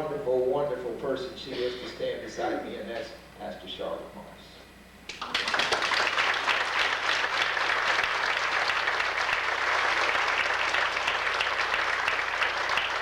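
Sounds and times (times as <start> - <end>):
congregation applauding: 5.1 - 13.0.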